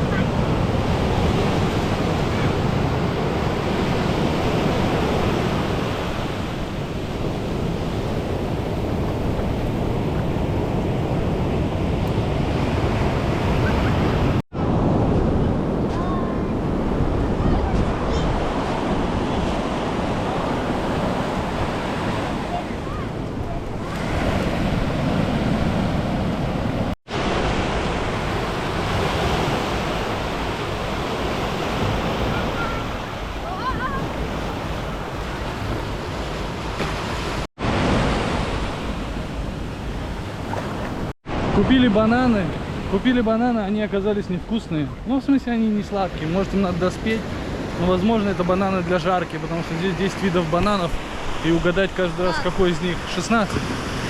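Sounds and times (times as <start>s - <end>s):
wind buffeting microphone: 0.0s - 41.6s
ocean surf on a beach: 0.0s - 54.0s.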